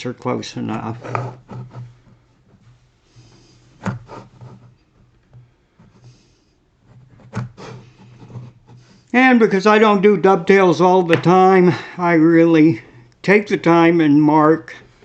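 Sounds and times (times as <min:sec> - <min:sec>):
pencil scratching on wood: 0:00.9 - 0:02.1, 0:03.3 - 0:09.0.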